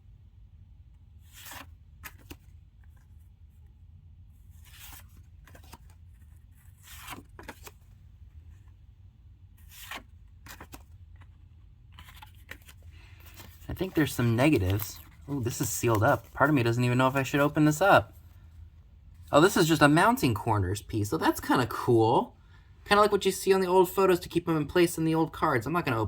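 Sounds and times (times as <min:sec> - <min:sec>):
paper rustling: 0:01.2 - 0:03.2, 0:04.5 - 0:08.8, 0:09.6 - 0:18.4.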